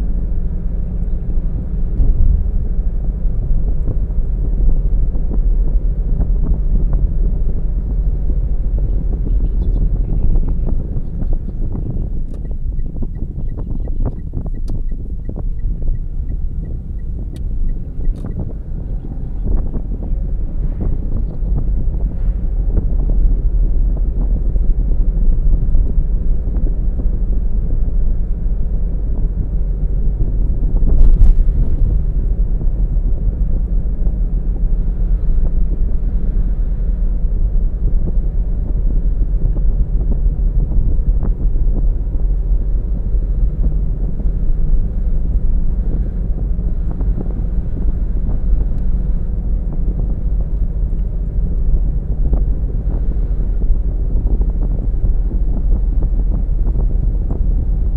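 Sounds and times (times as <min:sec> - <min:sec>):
car driving low rumble: 0:00.0 - 0:57.9
loud thump: 0:31.0 - 0:33.1.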